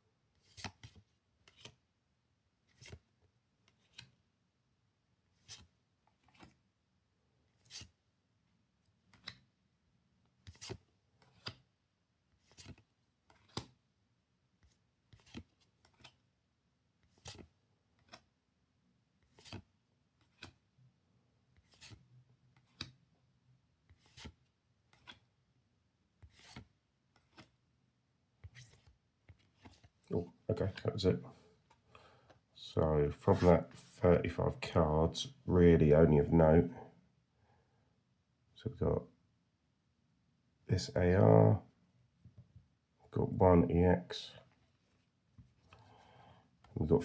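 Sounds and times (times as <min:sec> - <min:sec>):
trading cards swishing: 0:33.3 - 0:33.9.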